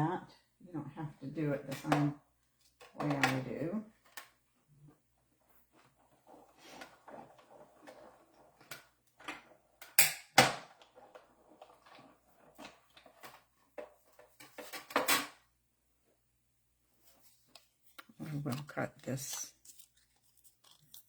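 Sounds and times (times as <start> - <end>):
paper rustling: 17.0 - 21.0.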